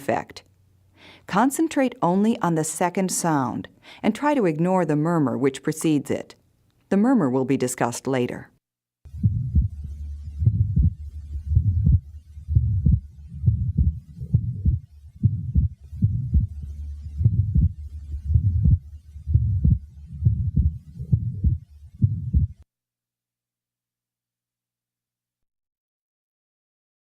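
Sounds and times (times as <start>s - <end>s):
heart murmur: 9.1s - 22.6s
low heartbeats: 9.1s - 22.6s.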